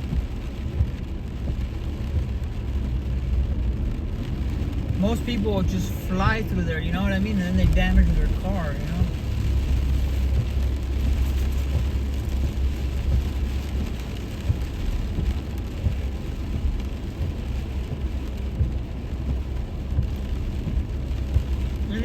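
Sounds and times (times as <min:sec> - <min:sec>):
rain and wet tyres hissing: 0:00.0 - 0:22.0
truck engine and road rumble: 0:00.0 - 0:22.0.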